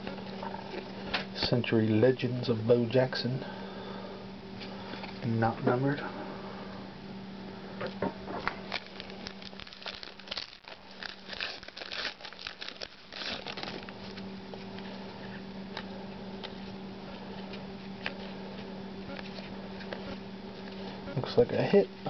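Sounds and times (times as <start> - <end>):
wrapper tearing and crinkling: 8.4 - 14.2
cards rustling: 8.4 - 15.0.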